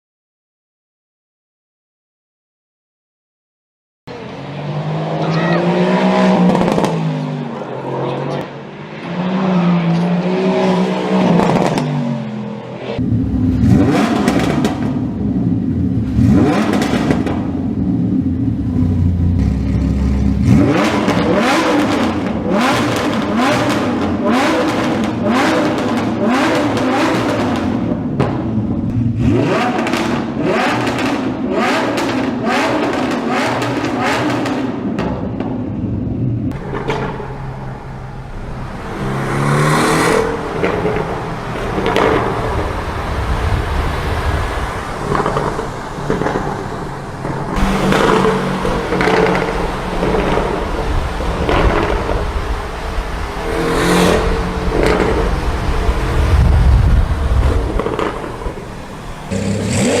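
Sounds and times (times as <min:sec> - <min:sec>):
car exhausts revving: 0:13.0 - 1:00.0
exhaust crackles and pops: 0:40.6 - 0:42.9, 0:44.9 - 0:53.4, 0:54.7 - 1:00.0.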